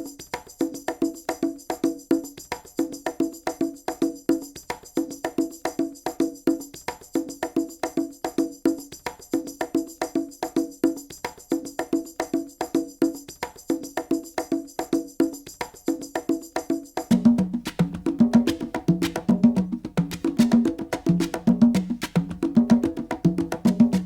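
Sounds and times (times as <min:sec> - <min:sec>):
pitched knocking percussion: 0:09.4 - 0:24.0.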